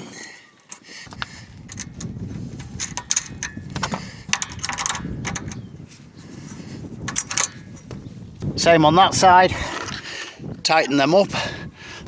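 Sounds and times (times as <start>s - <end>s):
metal bolts clicking and knocking: 1.1s - 5.8s, 7.0s - 8.0s
wind rumble on microphone: 1.1s - 12.0s.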